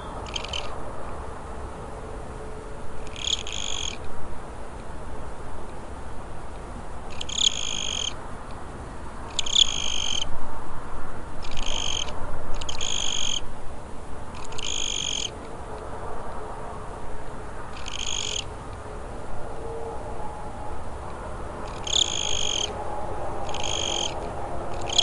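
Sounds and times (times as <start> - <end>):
cricket chirping: 0.0 - 0.8, 3.0 - 4.1, 7.1 - 8.2, 9.3 - 10.3, 11.4 - 13.5, 14.3 - 15.4, 17.7 - 18.5, 20.8 - 22.8, 23.4 - 25.0.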